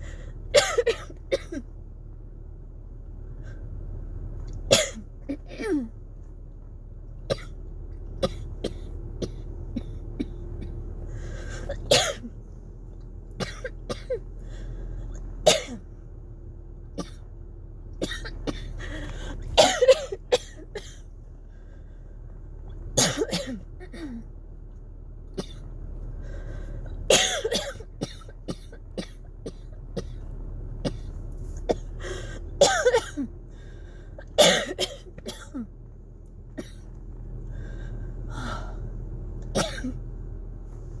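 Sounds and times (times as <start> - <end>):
woman coughing: 0.6 - 1.6, 4.7 - 5.9, 11.7 - 12.3, 13.4 - 14.2, 15.5 - 15.8, 18.0 - 18.8, 19.6 - 21.0, 23.0 - 24.2, 27.1 - 30.1, 32.6 - 33.3, 34.4 - 35.7, 39.6 - 40.0.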